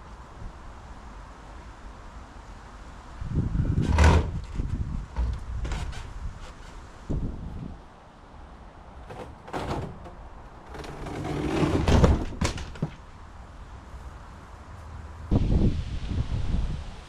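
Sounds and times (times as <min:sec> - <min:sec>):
knocks and clunks of parts: 0:03.8 - 0:06.8, 0:09.0 - 0:13.1.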